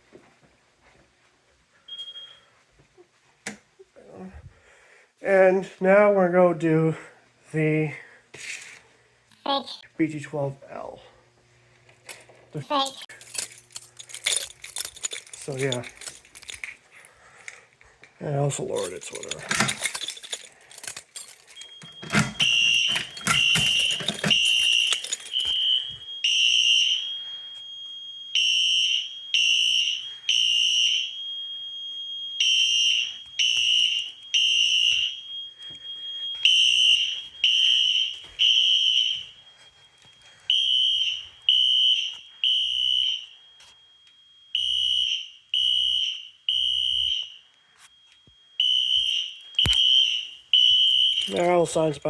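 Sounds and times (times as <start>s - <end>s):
fire alarm horn beeps: 1.9s - 2.5s, 19.9s - 51.9s.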